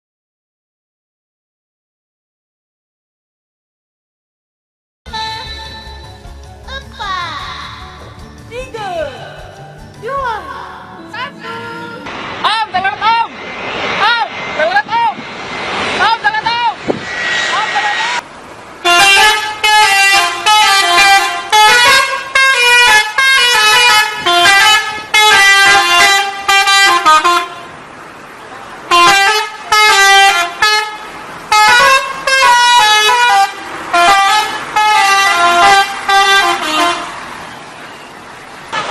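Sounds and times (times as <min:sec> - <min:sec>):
musical bus horn melody: 0:05.1 - 0:06.5, 0:09.2 - 0:12.1, 0:18.8 - 0:27.8, 0:28.9 - 0:38.1.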